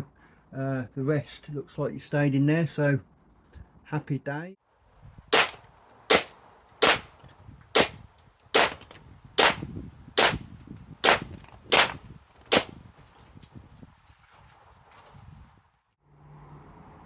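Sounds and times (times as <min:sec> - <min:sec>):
airsoft pistol shots: 0:05.4 - 0:07.1, 0:07.8 - 0:08.0, 0:08.6 - 0:10.4, 0:11.0 - 0:12.7.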